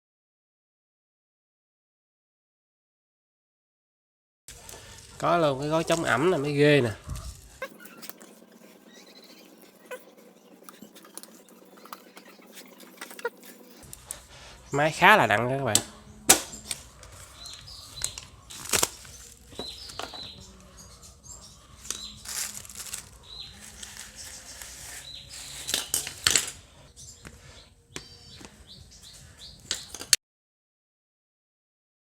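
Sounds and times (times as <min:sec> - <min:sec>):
plastic wrapping crinkling: 0:16.6 - 0:20.6, 0:21.8 - 0:26.6.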